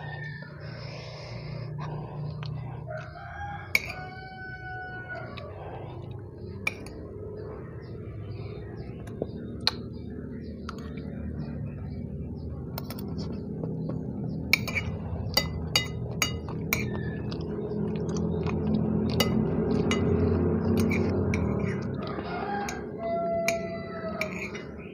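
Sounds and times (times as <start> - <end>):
utensil clinking on a plate: 3.7 - 4.1, 14.5 - 17.0, 19.1 - 21.8, 22.7 - 24.7.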